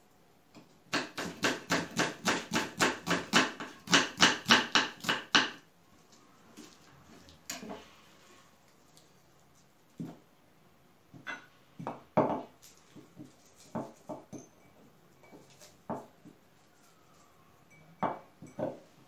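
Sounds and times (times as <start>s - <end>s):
utensils and glassware clinking: 13.5s - 15.8s.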